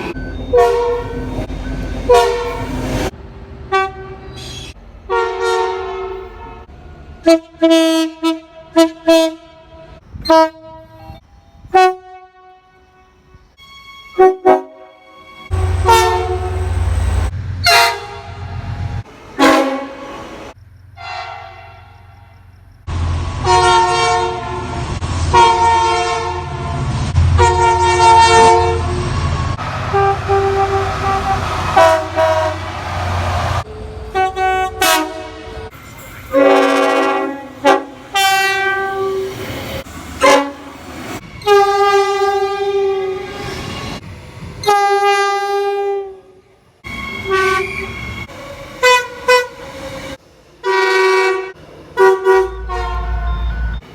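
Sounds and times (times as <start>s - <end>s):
train horn blasts: 0.5s - 1.4s, 2.0s - 3.1s, 3.7s - 16.9s, 17.6s - 20.4s, 21.0s - 22.4s, 23.4s - 35.7s, 36.3s - 39.4s, 40.2s - 40.7s, 41.4s - 44.0s, 44.6s - 49.7s, 50.6s - 53.8s
low locomotive rumble: 14.6s - 43.0s.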